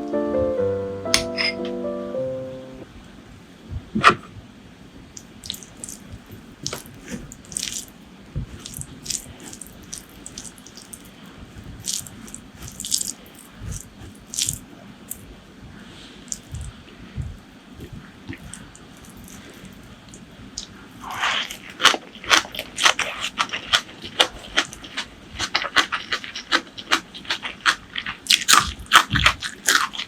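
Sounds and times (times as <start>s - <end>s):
wet chewing and biting: 5.2s - 15.3s, 16.3s - 16.8s, 17.8s - 30.0s.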